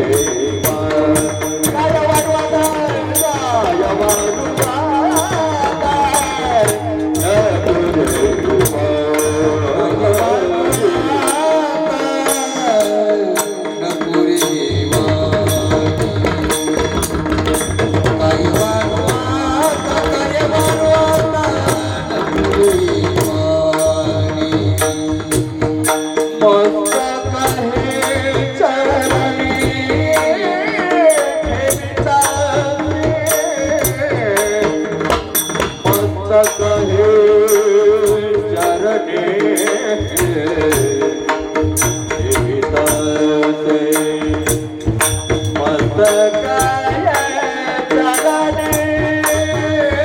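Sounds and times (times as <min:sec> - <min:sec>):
hand drum beat: 0:00.0 - 0:11.5, 0:12.8 - 0:50.0
men singing devotional song: 0:00.0 - 0:50.0
small hand cymbals: 0:39.5 - 0:50.0.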